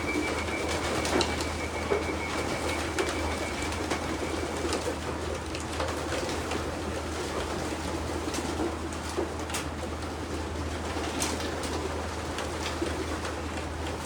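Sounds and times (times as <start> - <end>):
steady low hum: 0.0 - 4.9
thin high steady tone: 0.0 - 5.0.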